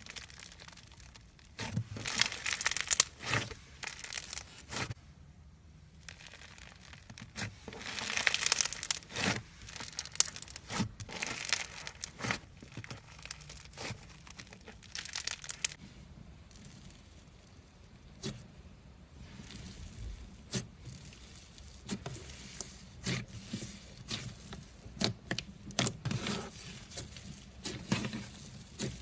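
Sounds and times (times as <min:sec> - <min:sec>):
slime crackling and popping: 0:00.0 - 0:05.0, 0:05.9 - 0:15.8.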